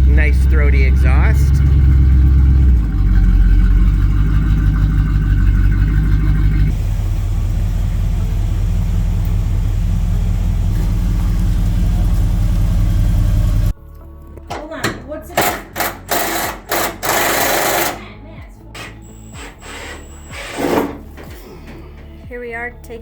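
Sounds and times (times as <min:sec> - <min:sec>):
car engine idling with throaty exhaust: 0:00.0 - 0:13.7.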